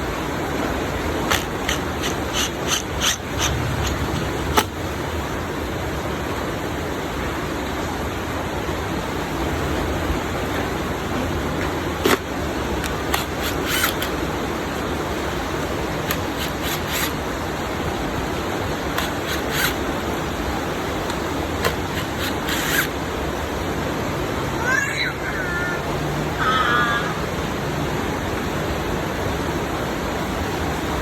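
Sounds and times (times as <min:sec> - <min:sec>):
steady background hiss: 0:00.0 - 0:31.0
light clicks of screws: 0:12.8 - 0:14.2, 0:21.0 - 0:22.9.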